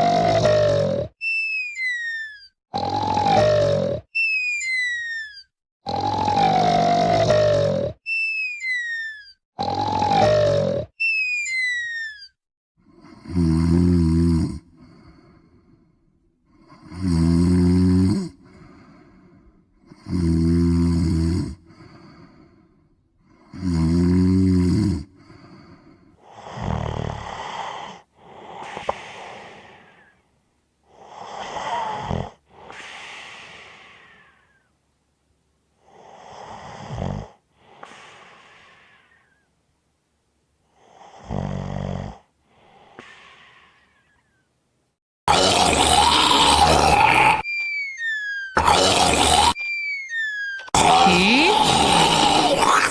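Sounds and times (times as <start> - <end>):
loud snoring: 0.0 - 1.2, 2.8 - 4.1, 5.9 - 8.0, 9.6 - 11.0, 12.9 - 15.3, 16.6 - 22.4, 23.4 - 30.1, 30.9 - 32.4, 35.8 - 38.0, 40.8 - 43.0, 45.3 - 47.4, 48.6 - 49.6, 50.7 - 52.9.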